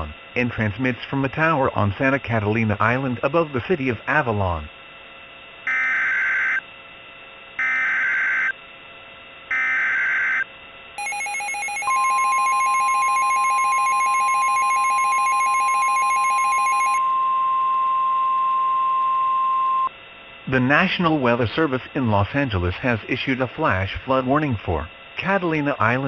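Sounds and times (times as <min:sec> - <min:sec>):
screeching digital data tones: 0:11.0 - 0:18.0
steady warning alarm tone: 0:11.0 - 0:19.9.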